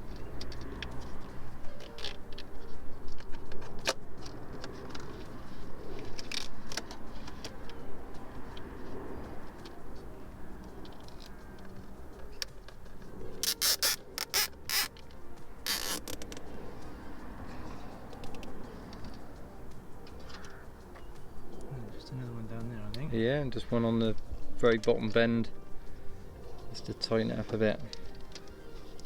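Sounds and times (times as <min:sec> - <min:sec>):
cable tie ratcheting clicks: 0:13.4 - 0:16.4.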